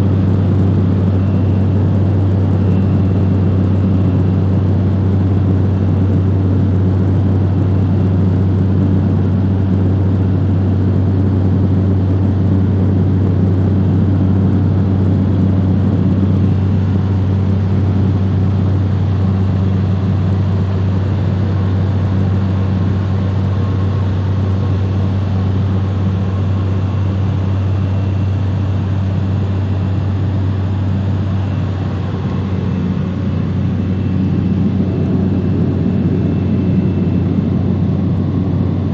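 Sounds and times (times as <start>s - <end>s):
turboprop engine drone: 0.0s - 38.9s
faint high whine: 14.2s - 38.9s.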